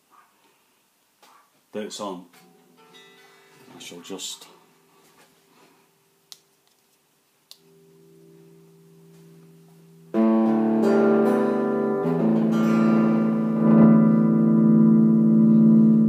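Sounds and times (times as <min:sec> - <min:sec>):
organ playing held chords: 0:07.8 - 0:16.0.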